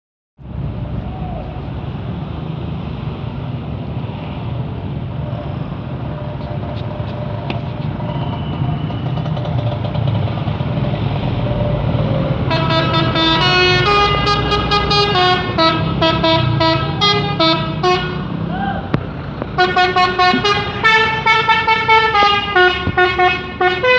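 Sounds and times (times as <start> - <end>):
low vehicle rumble: 0.4 - 23.9
bus musical horn tune: 12.5 - 18.5, 19.6 - 23.9.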